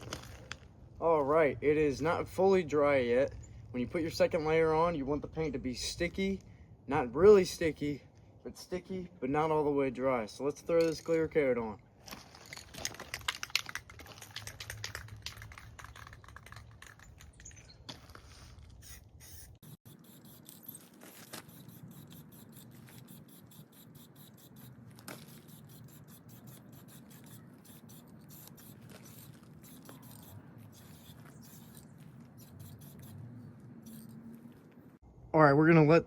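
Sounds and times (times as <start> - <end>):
spray can rattling when shaken: 12.7 - 17.4.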